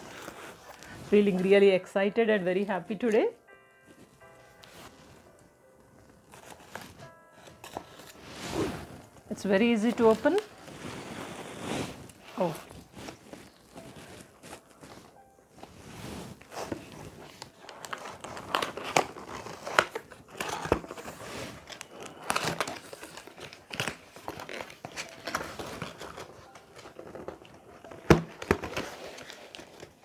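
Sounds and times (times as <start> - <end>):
cardboard box being torn open: 16.4 - 30.0.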